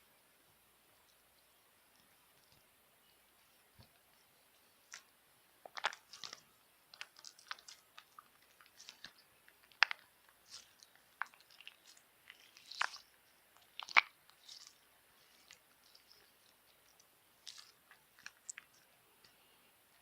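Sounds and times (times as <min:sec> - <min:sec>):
slime clicking and popping: 0:04.9 - 0:18.8.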